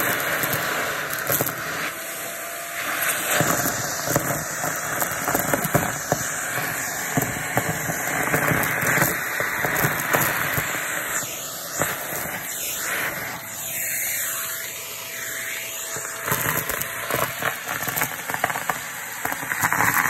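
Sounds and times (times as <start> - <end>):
debris rattling through nozzle: 0.0 - 1.8, 3.0 - 13.2
vacuum cleaner rushing hiss: 0.0 - 20.0.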